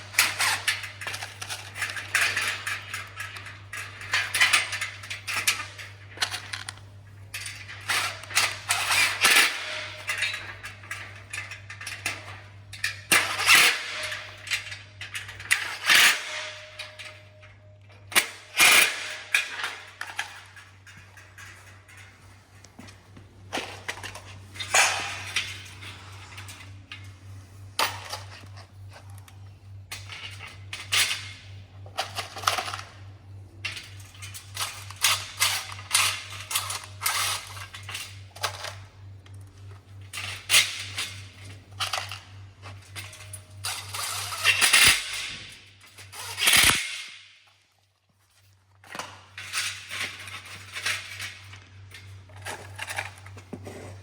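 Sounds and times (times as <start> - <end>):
frame parts clinking and rattling: 0.0 - 29.2
steady low hum: 0.0 - 54.0.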